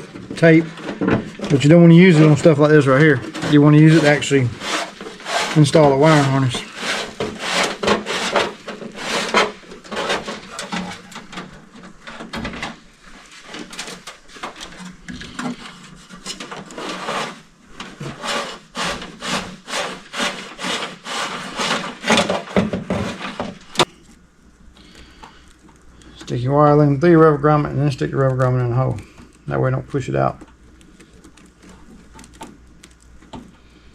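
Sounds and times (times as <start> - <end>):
hands rubbing wires and tape: 0.0 - 11.3, 30.5 - 33.5.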